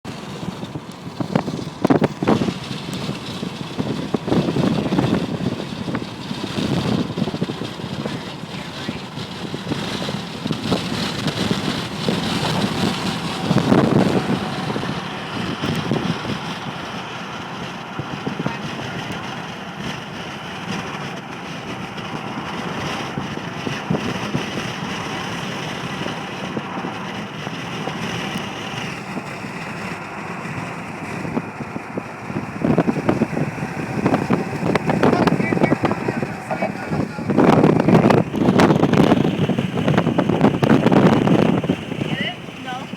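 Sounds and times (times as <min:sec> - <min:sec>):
car road and engine noise: 0:00.0 - 0:42.9.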